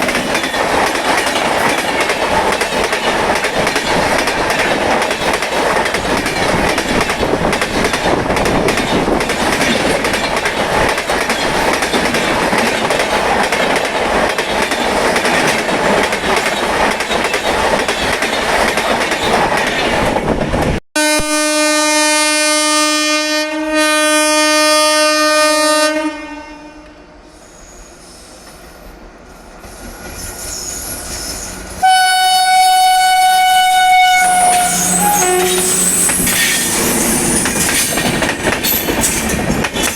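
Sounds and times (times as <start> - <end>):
train wheels clattering over rails: 0.0 - 20.8, 34.3 - 39.9
higher-pitched horn tone: 21.0 - 27.1, 31.8 - 37.0
low locomotive air horn: 21.0 - 27.3, 31.8 - 36.7.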